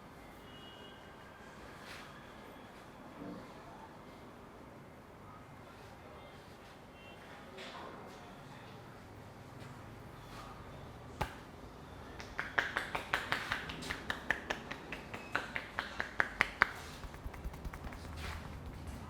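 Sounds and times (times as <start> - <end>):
hands slapping a back: 11.2 - 11.5, 12.2 - 19.0.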